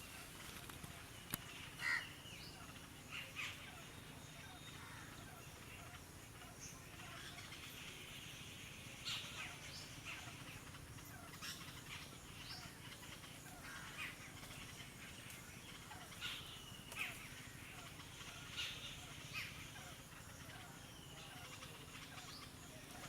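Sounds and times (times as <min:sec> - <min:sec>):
birds giving sharp calls: 0:00.0 - 0:08.1
low outdoor background hum: 0:00.0 - 0:23.0.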